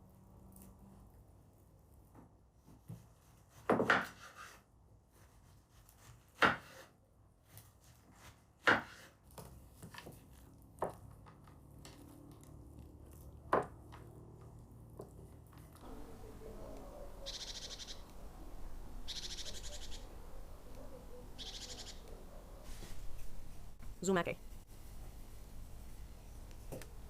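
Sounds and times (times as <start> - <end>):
knife chopping on wooden board: 2.9 - 4.4, 6.0 - 6.9, 8.2 - 9.2
knife scraping board: 2.9 - 4.6, 5.2 - 6.9, 7.5 - 9.2.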